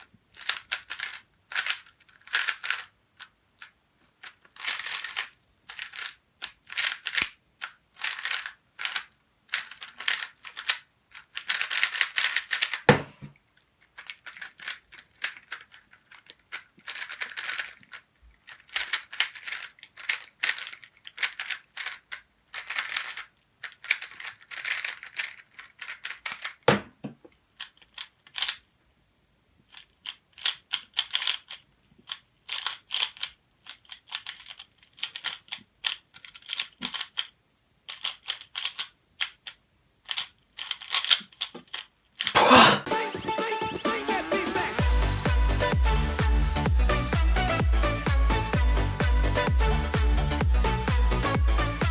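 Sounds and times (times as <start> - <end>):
puzzle cube plastic clicking: 0.0 - 28.7, 29.6 - 42.4
heavy thumps: 12.9 - 13.3, 26.7 - 27.3.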